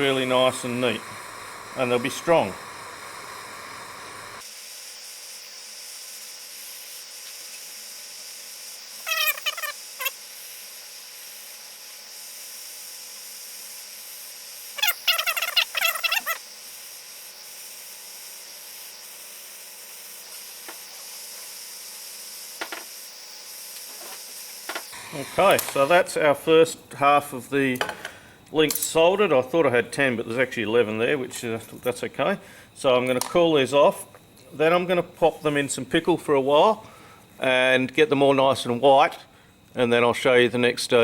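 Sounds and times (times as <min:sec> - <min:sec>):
soldering torch hiss: 0:00.0 - 0:31.6.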